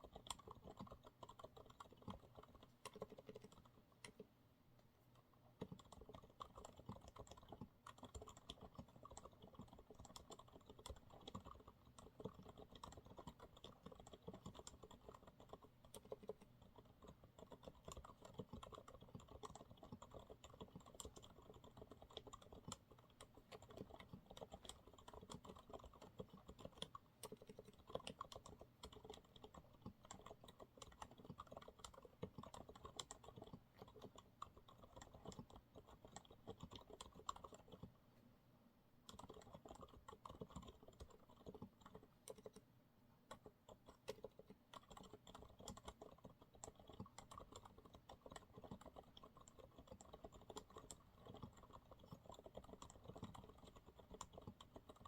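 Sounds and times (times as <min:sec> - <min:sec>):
quiet keyboard typing: 0:00.0 - 0:38.0, 0:39.0 - 0:55.0.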